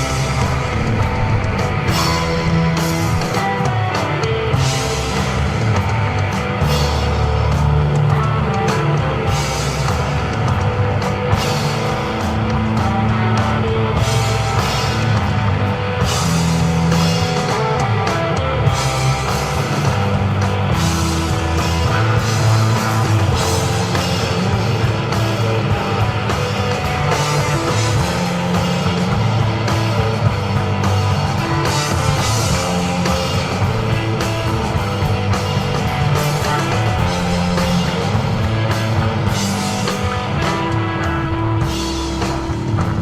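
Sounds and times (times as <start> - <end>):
bass guitar notes: 0.0 - 43.0
drum kit cymbals: 0.0 - 43.0
electric guitar: 0.0 - 43.0.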